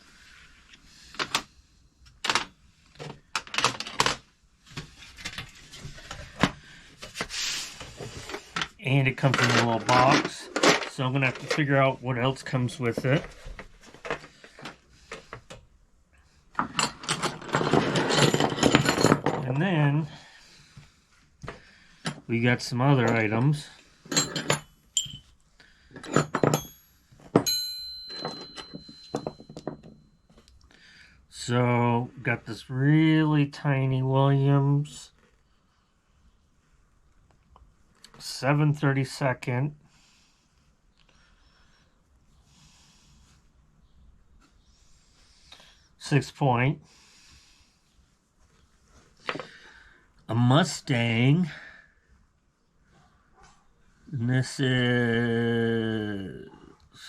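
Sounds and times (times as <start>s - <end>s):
metal tools clinking: 8.3s - 11.8s, 16.6s - 19.6s, 22.9s - 25.3s, 25.9s - 30.1s
metal clank with ringing tone: 24.1s - 25.3s, 26.0s - 29.9s.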